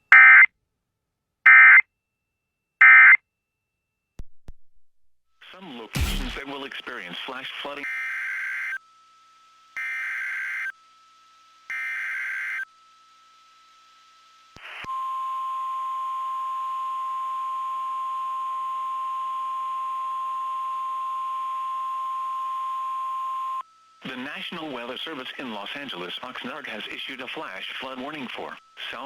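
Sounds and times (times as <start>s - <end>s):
steady high alert tone: 6.0s - 6.4s
buzzy digital data bursts: 6.0s - 6.5s.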